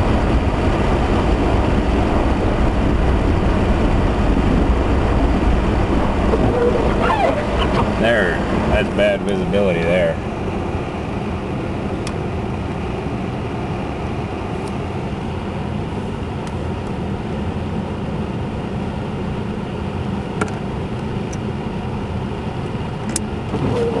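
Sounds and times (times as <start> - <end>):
car engine and tyres rumbling: 0.0 - 24.0
road and wind noise hiss: 0.0 - 24.0.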